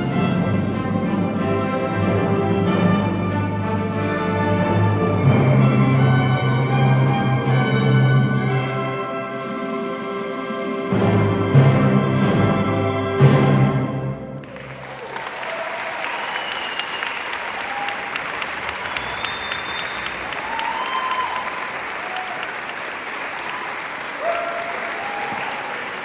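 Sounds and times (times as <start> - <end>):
audience applause: 14.4 - 26.0
cheers and whoops: 14.8 - 26.0.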